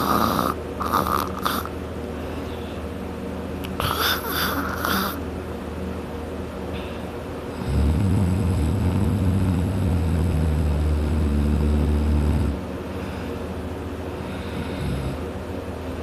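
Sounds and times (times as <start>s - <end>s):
person snoring loudly: 0.0s - 1.7s, 3.8s - 5.2s, 7.6s - 12.6s.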